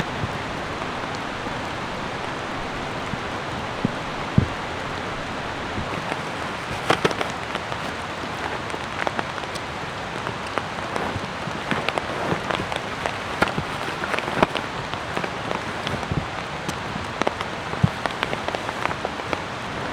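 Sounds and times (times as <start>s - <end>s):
raindrop impacts: 0.0s - 19.9s
steady rain hiss: 0.0s - 19.9s.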